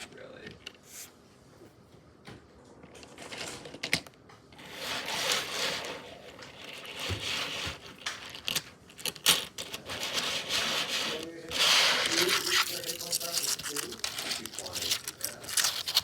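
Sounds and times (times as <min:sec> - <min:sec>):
plastic parts clattering: 0:04.9 - 0:16.0.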